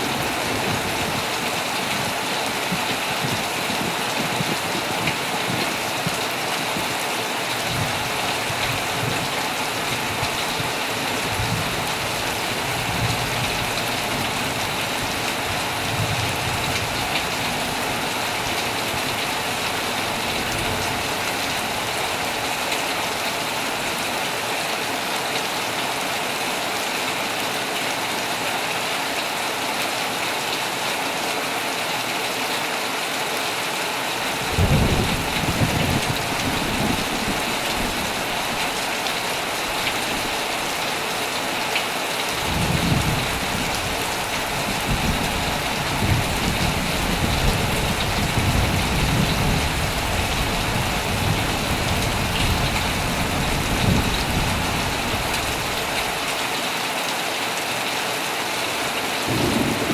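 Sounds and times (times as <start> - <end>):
heavy rain: 0.0 - 59.9
rolling thunder: 34.4 - 38.8, 59.3 - 59.9.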